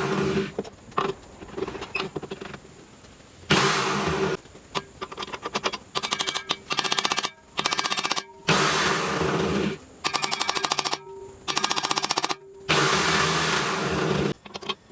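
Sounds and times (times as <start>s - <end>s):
fast even clicking: 4.8s - 8.3s, 10.0s - 12.4s
electric drill motor running: 6.1s - 14.4s.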